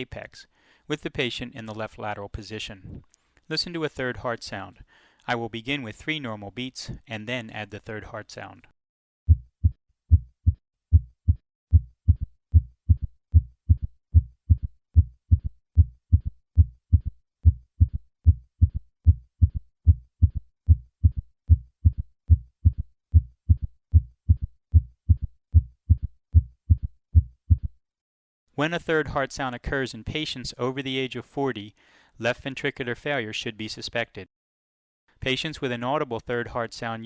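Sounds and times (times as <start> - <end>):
heartbeat: 9.3 - 27.8.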